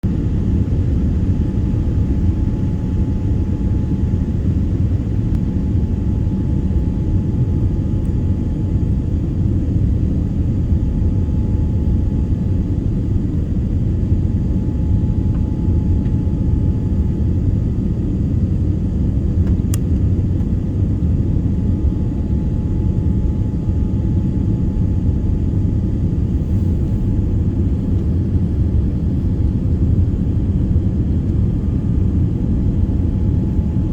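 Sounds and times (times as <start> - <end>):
airliner cabin rumble: 0.0 - 33.9
faint steady whine: 0.1 - 33.9
small click: 19.4 - 20.5.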